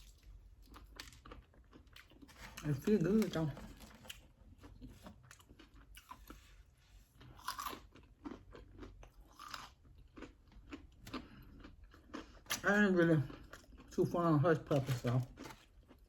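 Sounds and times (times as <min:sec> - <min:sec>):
person chewing food: 0:00.0 - 0:14.1, 0:14.7 - 0:16.0.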